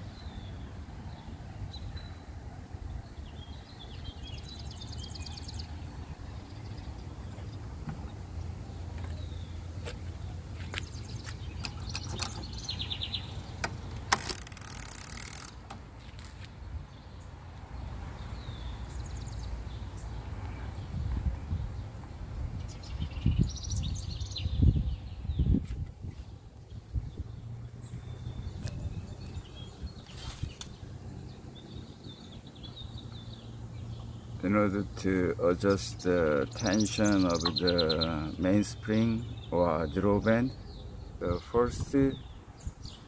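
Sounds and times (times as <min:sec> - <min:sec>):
typewriter ratcheting ticks: 0:14.1 - 0:15.6.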